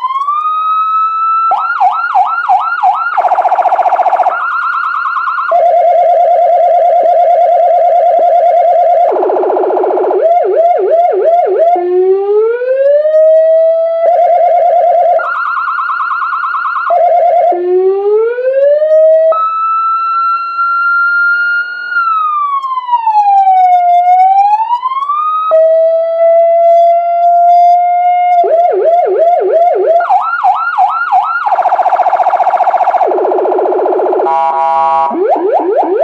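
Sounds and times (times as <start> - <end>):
electronic siren switching tones: 0.0 - 36.0
harsh horn blast: 34.2 - 35.1.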